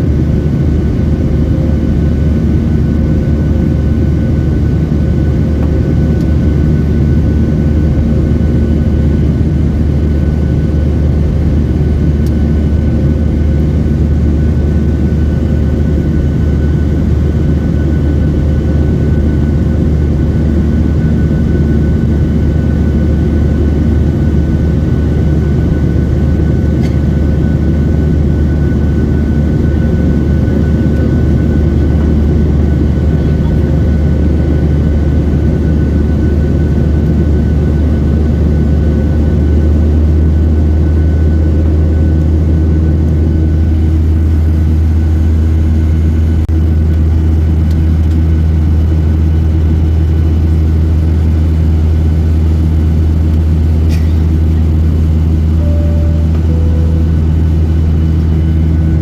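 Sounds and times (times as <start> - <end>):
jet engine rumble: 0.0 - 59.0
faint steady hum: 53.9 - 59.0.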